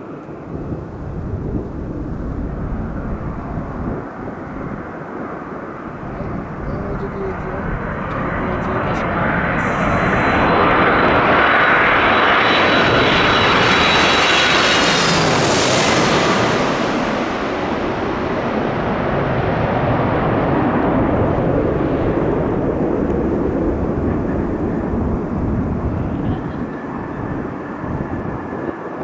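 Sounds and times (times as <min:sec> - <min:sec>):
jet airliner passing overhead: 0:00.0 - 0:29.0.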